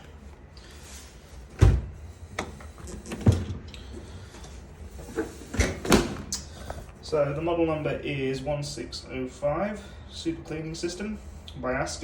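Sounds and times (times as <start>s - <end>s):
dishwasher heavy thumps: 1.6s - 1.9s.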